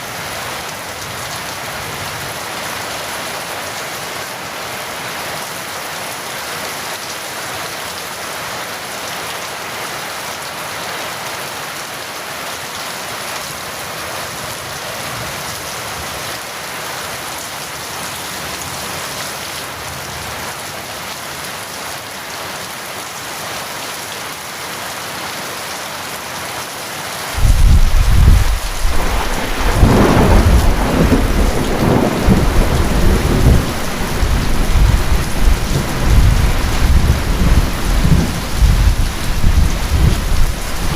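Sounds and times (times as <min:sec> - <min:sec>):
steady rain: 0:00.0 - 0:40.9
thunder clap and rumbling: 0:27.4 - 0:40.9.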